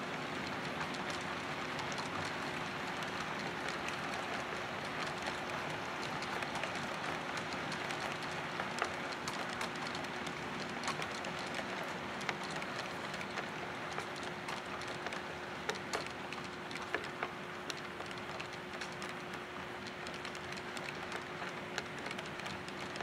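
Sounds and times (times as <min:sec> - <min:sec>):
wheels clicking on rails: 0:00.0 - 0:23.0.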